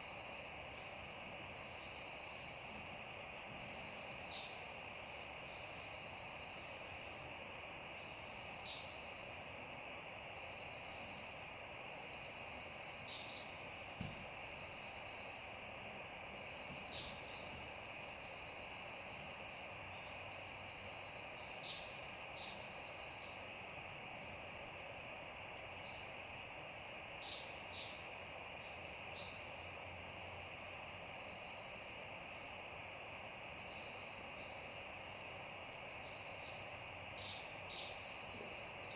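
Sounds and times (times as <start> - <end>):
crickets trilling: 0.0 - 38.9
insect chirps: 0.0 - 38.9.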